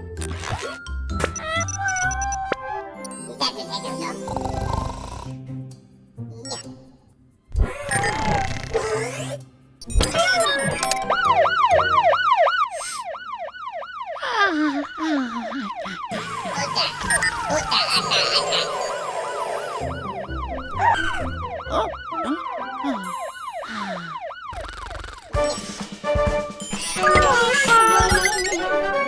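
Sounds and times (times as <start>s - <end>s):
background music: 0.0s - 12.5s, 16.1s - 23.9s, 25.3s - 29.0s
cartoon siren yelping: 1.4s - 3.5s, 7.9s - 9.1s, 10.0s - 25.6s, 26.7s - 29.0s.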